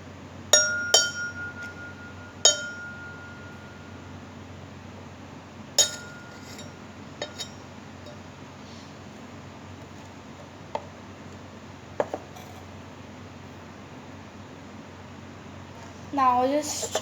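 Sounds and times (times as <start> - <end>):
glass and utensils clinking: 0.6 - 3.8, 5.8 - 8.2.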